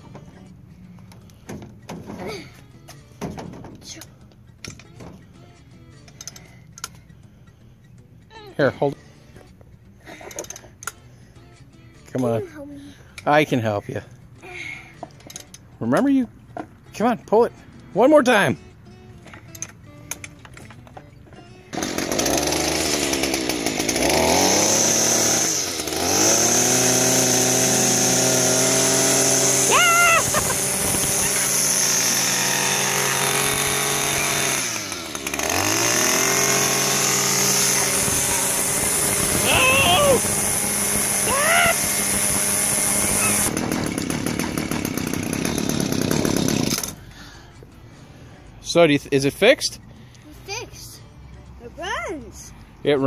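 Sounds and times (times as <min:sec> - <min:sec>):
starter cord pull: 0:19.2 - 0:21.0, 0:42.7 - 0:47.0
string trimmer engine revving: 0:21.7 - 0:47.0.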